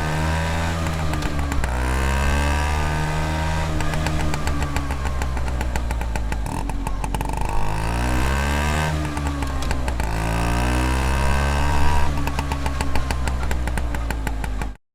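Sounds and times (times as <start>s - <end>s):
scooter engine revving: 0.0s - 14.8s.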